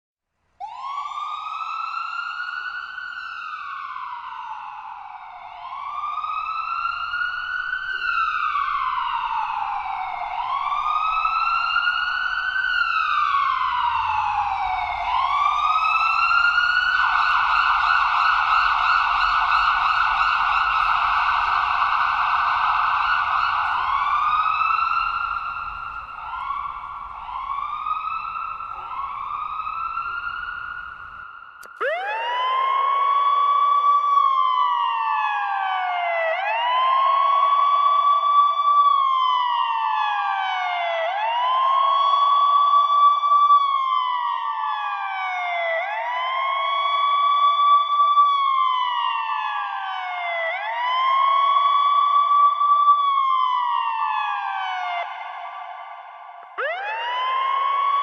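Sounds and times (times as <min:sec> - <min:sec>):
ambulance siren: 0:00.6 - 0:58.0.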